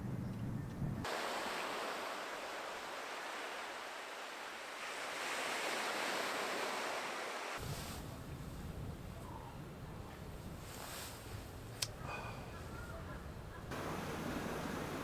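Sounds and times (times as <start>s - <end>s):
sea waves washing onto beach: 1.1s - 8.2s, 13.7s - 15.0s.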